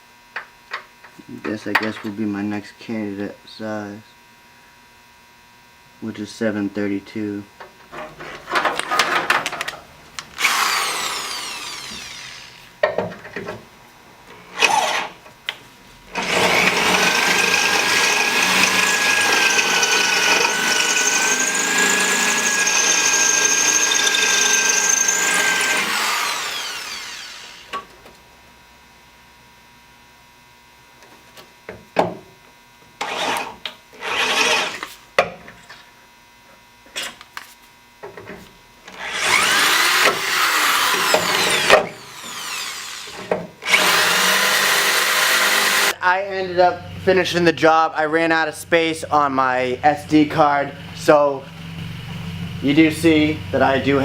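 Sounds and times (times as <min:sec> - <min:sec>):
tool handling clicks and knocks: 0:07.9 - 0:10.3
electric drill whining: 0:10.3 - 0:12.8, 0:14.4 - 0:15.2, 0:16.1 - 0:27.8, 0:33.0 - 0:34.9, 0:38.9 - 0:46.0.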